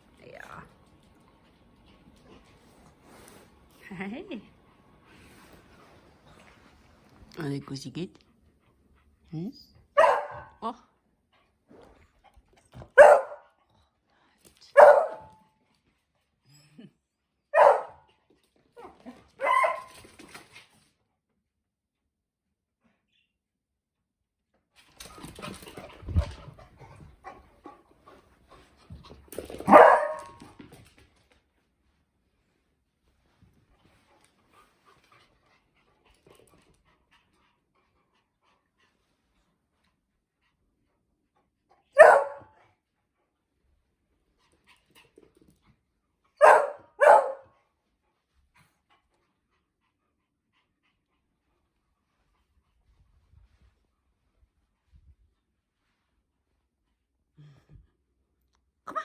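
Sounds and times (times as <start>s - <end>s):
dog barking: 10.0s - 10.6s, 13.0s - 13.4s, 14.8s - 15.3s, 17.6s - 18.1s, 19.4s - 19.9s, 29.7s - 30.4s, 42.0s - 42.6s, 46.4s - 47.5s
dogs scuffling: 24.8s - 27.6s, 28.2s - 31.6s.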